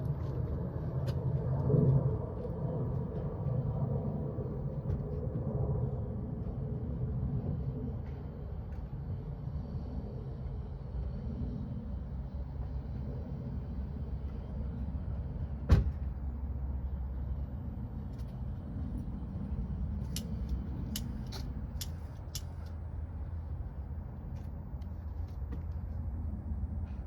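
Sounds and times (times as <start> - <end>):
steady low rumble: 0.0 - 27.0
torch igniter clicks: 20.1 - 22.8.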